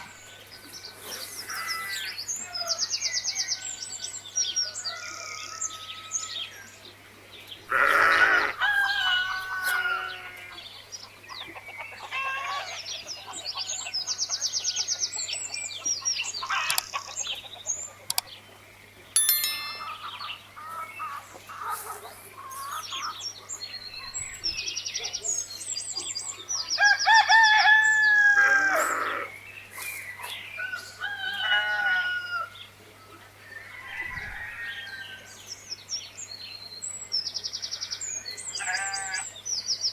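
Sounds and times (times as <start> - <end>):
chickens calling: 8.3 - 14.0
rooster crowing: 8.4 - 10.4, 26.8 - 29.1, 30.6 - 32.6
small birds chirping: 10.6 - 26.9.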